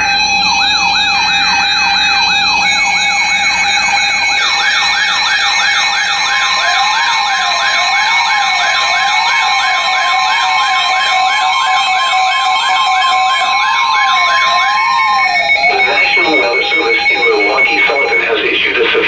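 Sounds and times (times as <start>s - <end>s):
slow siren warble: 0.0s - 18.6s
electronic sirens wailing: 0.0s - 19.0s
steady alarm tones: 0.0s - 19.0s.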